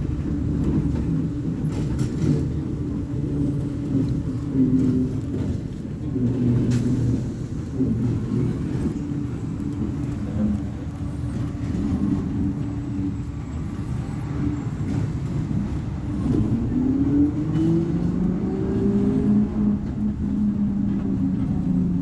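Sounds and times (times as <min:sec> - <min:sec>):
bus diesel engine revving: 0:10.7 - 0:22.0.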